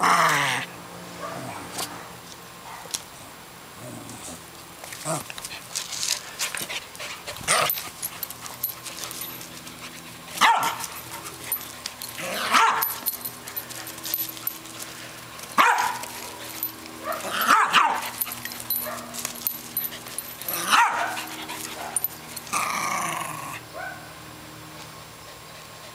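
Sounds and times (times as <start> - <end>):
dog barking: 1.2 - 1.6, 10.4 - 10.8, 12.5 - 13.0, 15.6 - 16.1, 17.0 - 18.1, 20.6 - 21.2, 23.8 - 24.1
dog growling: 3.8 - 5.4, 12.2 - 12.8, 20.4 - 23.6.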